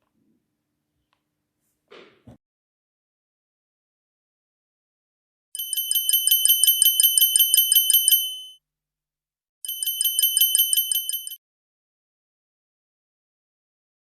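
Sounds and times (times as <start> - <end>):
mobile phone ringing beeps: 5.6 - 8.6, 9.7 - 11.4.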